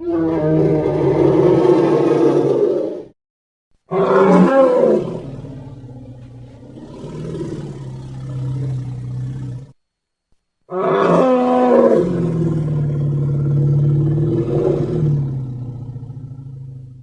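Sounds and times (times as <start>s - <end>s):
dinosaur roar: 0.0s - 3.1s, 3.9s - 9.8s, 10.7s - 17.0s
low long growl: 0.0s - 3.1s, 3.9s - 9.8s, 10.7s - 17.0s.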